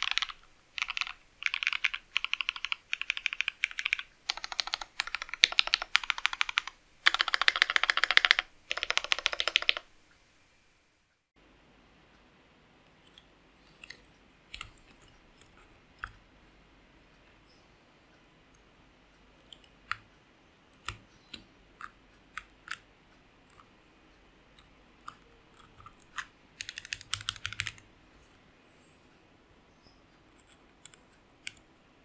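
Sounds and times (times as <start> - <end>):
mechanical keyboard typing: 0.0 - 9.9, 25.0 - 27.8.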